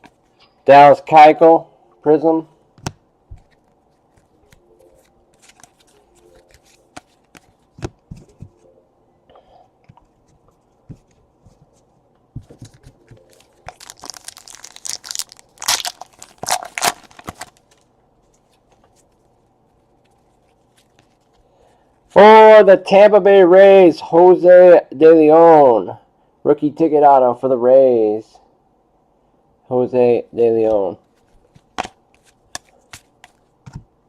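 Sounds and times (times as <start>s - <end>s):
cards clicking and tapping: 2.8s - 8.6s, 12.4s - 14.8s, 30.7s - 33.8s
wrapper crinkling and tearing: 13.0s - 17.9s.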